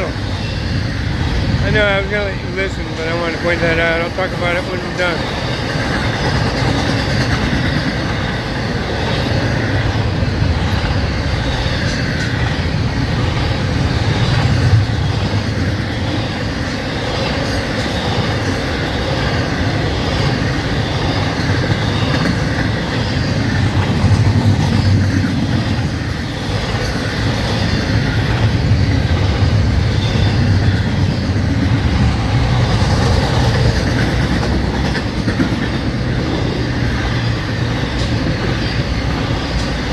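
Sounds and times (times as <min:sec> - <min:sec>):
train wheels rumbling on rails: 0:00.0 - 0:39.9.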